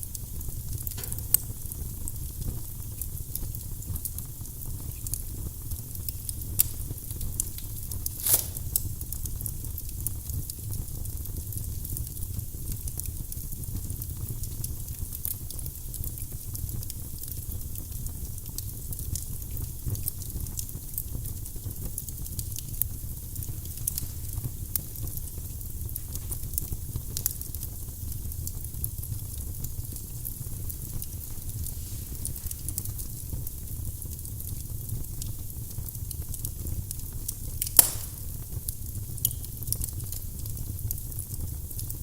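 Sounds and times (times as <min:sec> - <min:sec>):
wood fire crackling: 0:00.0 - 0:42.0
sharp pop from wood: 0:08.2 - 0:08.8, 0:37.7 - 0:38.3.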